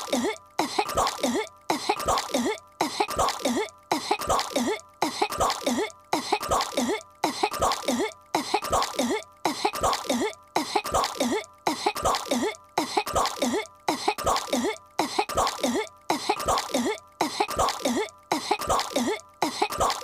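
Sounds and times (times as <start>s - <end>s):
cartoon girl coughing and choking: 0.0s - 20.0s.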